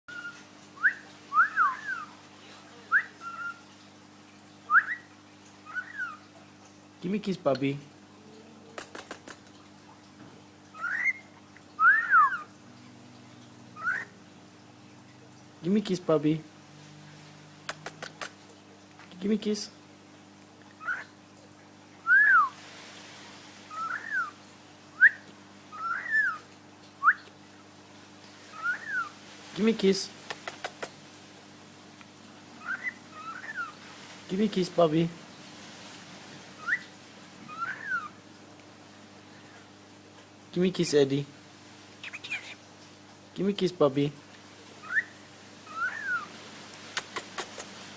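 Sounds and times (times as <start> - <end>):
cockatiel whistled chirps: 0.1 - 2.1, 4.7 - 5.1, 11.8 - 12.4, 22.1 - 22.5
cockatiel whistling: 0.1 - 2.1, 4.7 - 5.1, 10.8 - 11.2, 11.8 - 12.5, 22.1 - 22.5, 23.7 - 24.3, 25.0 - 26.4, 28.5 - 29.1, 36.6 - 36.9, 37.5 - 38.1, 45.7 - 46.3.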